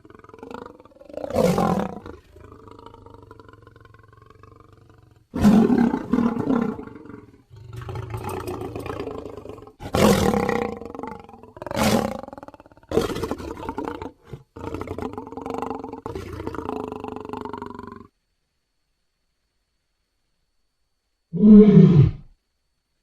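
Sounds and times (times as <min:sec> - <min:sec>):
lion roaring and growling: 0:00.0 - 0:17.8.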